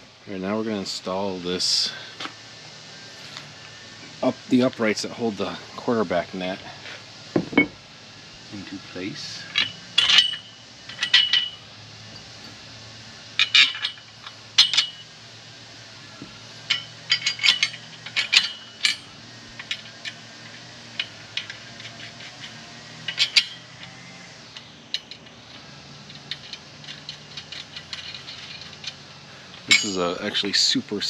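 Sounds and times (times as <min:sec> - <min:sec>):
metal parts clinking: 0:09.2 - 0:12.6, 0:13.3 - 0:15.2, 0:16.5 - 0:30.8.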